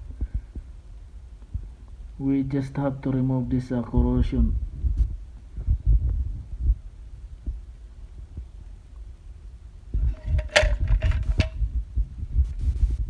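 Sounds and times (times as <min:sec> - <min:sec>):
handling rumble with knocks: 0:10.1 - 0:11.6
sharp clicks and scraping: 0:10.1 - 0:11.6.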